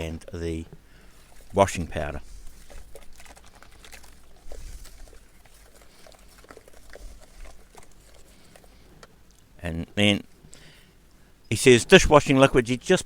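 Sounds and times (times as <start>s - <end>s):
liquid fizzing with tiny bubbles: 0.9s - 8.8s.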